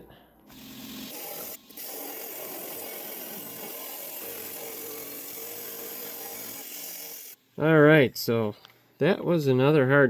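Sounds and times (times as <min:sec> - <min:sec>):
rock saw grinding stone: 0:00.5 - 0:07.4.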